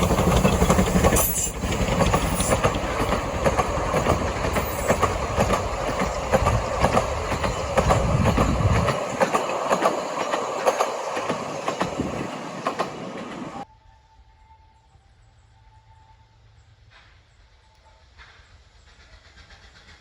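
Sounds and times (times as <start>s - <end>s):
train wheels clicking over rail joints: 0.0s - 13.6s.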